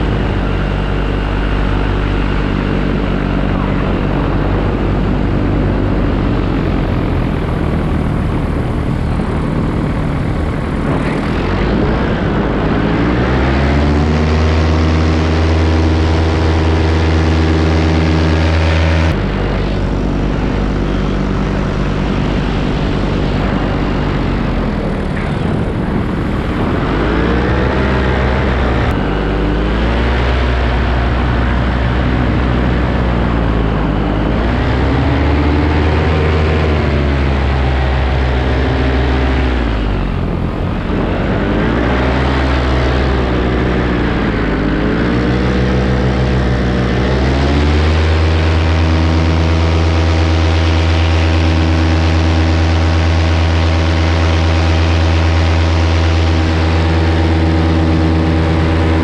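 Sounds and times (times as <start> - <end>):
paramotor engine and propeller: 0.0 - 59.0.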